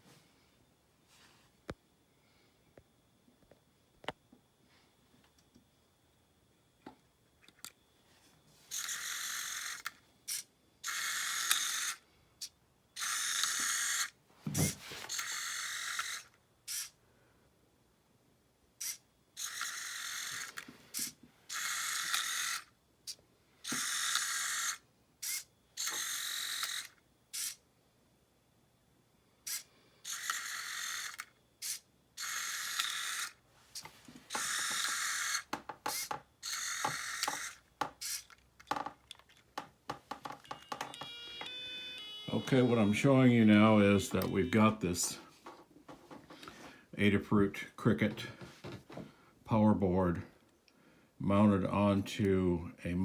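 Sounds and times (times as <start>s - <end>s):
small electric motors buzzing: 8.6s - 17.0s, 18.8s - 27.6s, 29.4s - 38.8s, 40.2s - 43.0s
clicks: 33.8s - 43.1s, 44.0s - 46.6s.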